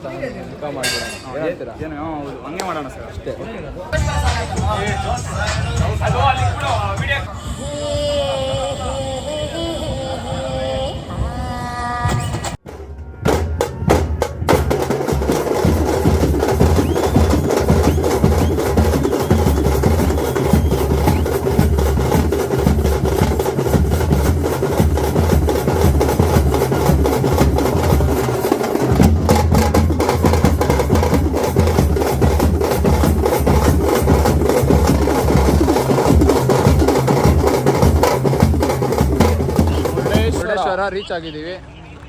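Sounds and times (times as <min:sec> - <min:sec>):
music with driving drum beat: 0:04.0 - 0:08.8, 0:12.1 - 0:40.5.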